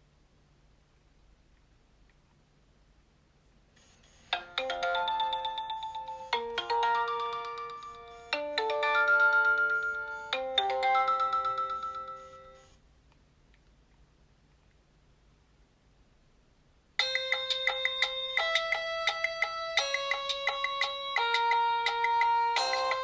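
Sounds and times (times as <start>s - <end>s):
chiming electronic ringtone: 4.3s - 12.8s, 17.0s - 23.0s.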